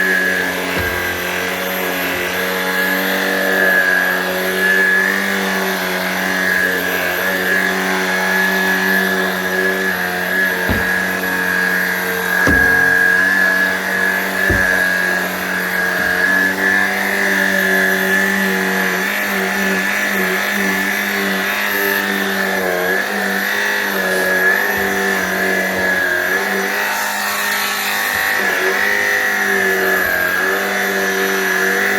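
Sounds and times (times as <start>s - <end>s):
stick vacuum motor whine: 0.0s - 31.9s
low thump: 10.7s - 11.3s, 12.4s - 13.2s, 14.5s - 15.0s.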